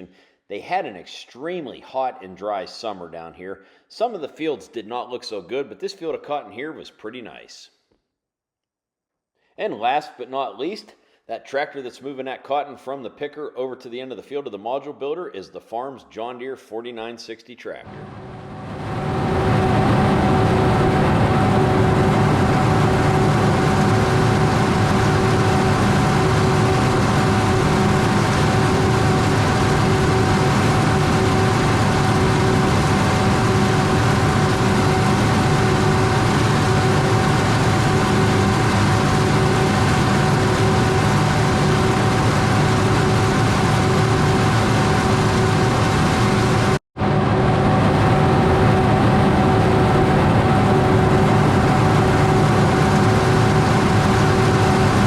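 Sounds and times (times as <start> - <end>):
diesel engine drone: 17.9 - 55.0
steady machine whine: 17.9 - 55.0.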